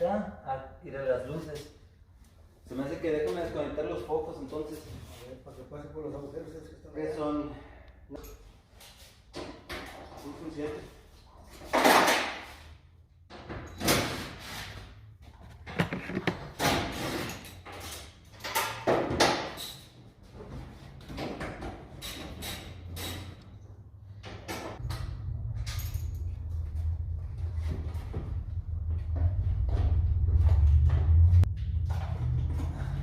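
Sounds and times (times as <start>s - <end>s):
knocks clatters and scrapes: 8.7s - 23.5s.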